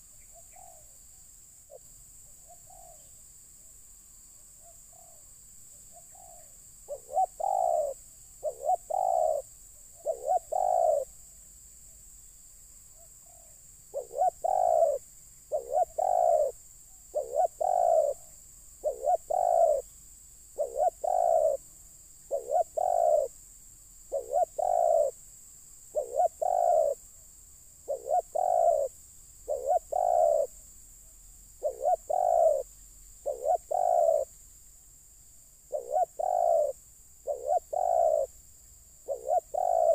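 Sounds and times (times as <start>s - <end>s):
dove cooing: 0.0s - 1.0s, 2.4s - 3.1s, 5.9s - 11.2s, 13.2s - 19.9s, 20.6s - 21.6s, 22.3s - 23.4s, 24.1s - 25.2s, 25.9s - 27.0s, 27.9s - 30.6s, 31.6s - 34.3s, 35.7s - 38.4s, 39.0s - 39.9s.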